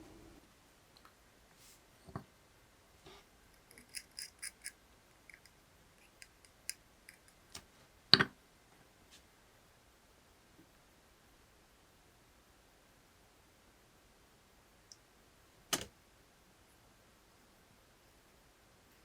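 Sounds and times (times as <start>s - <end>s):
small objects clicking: 3.6s - 7.6s.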